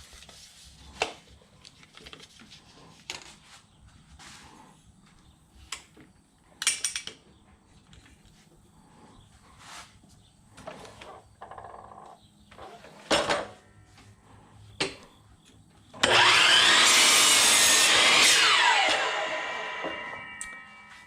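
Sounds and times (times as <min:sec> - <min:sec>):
electric miter saw cutting: 0:16.0 - 0:21.0.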